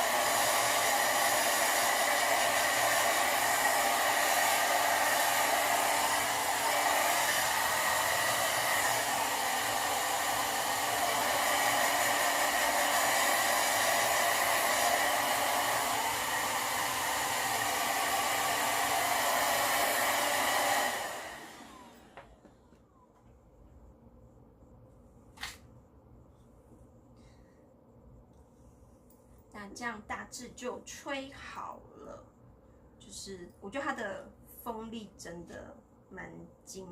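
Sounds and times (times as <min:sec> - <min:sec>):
hair dryer running: 0:00.0 - 0:23.0.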